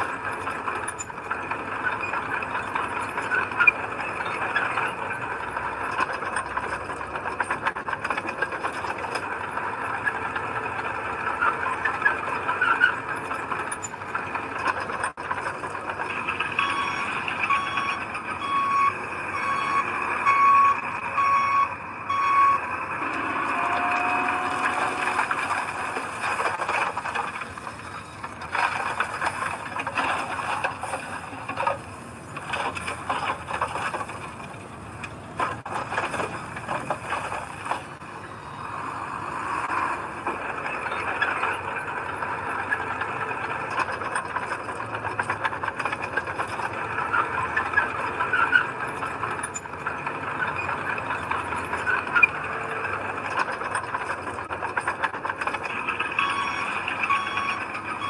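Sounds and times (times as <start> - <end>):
metallic clanks and rattles: 0.0 - 18.4, 23.0 - 38.0, 39.6 - 58.0
diesel engine running: 0.0 - 58.0
machinery squeal: 0.8 - 7.6, 11.2 - 33.9, 39.5 - 43.0, 43.7 - 58.0
reversing alarm beeping: 16.4 - 25.2, 56.0 - 58.0.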